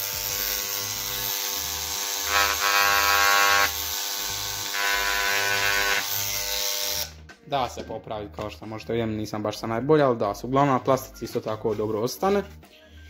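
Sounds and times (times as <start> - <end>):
engraving pen buzzing on plastic: 0.0 - 7.1.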